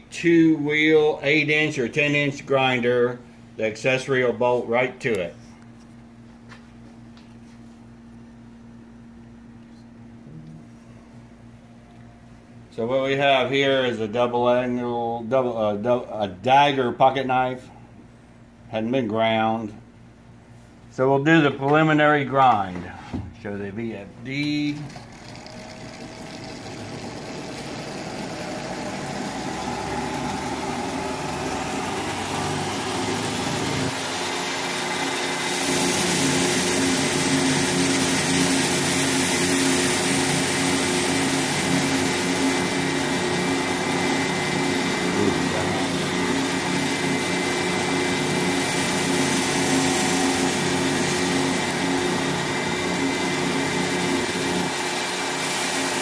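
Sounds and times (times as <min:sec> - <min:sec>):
electric grinder motor hum: 0:24.9 - 0:56.0.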